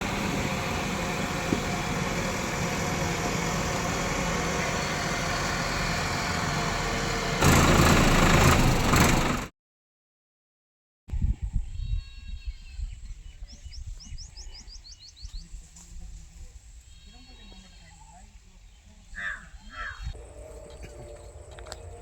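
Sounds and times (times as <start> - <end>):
heavy machine engine idling: 0.0 - 9.5.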